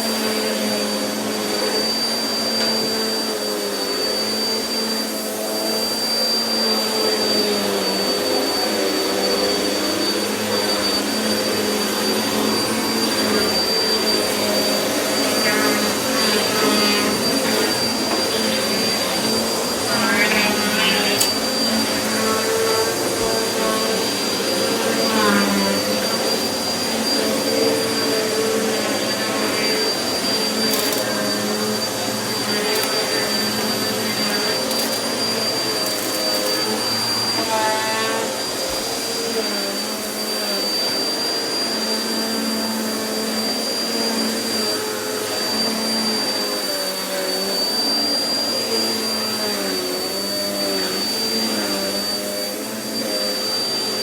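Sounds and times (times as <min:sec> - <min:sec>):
vacuum cleaner running on carpet: 0:00.0 - 0:54.0.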